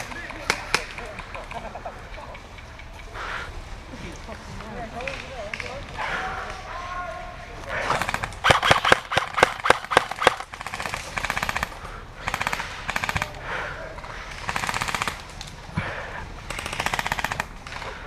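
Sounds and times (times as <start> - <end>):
rapid full-auto bursts: 7.7 - 13.5, 14.2 - 15.4, 16.4 - 18.0
airsoft gun shots: 7.9 - 10.4.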